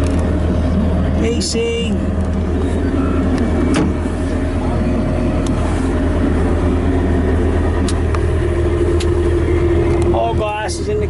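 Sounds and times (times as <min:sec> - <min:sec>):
machinery hum: 0:00.0 - 0:11.0.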